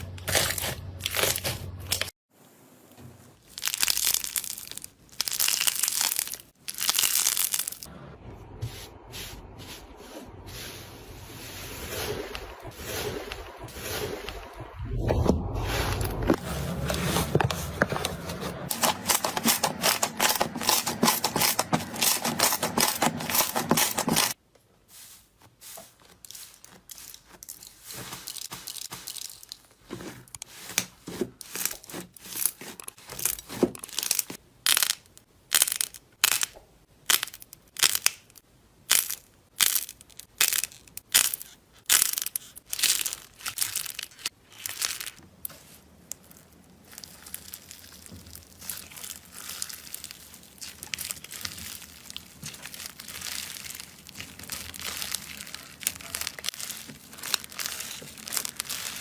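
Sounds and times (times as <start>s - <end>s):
slime crackling when squeezed: 46.1s - 59.0s.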